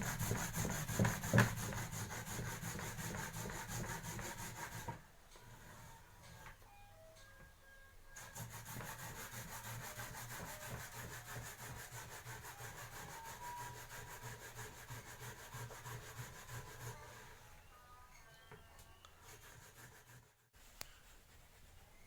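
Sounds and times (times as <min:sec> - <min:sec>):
gourd rasping on hand grater: 0:00.0 - 0:05.0, 0:08.2 - 0:17.3.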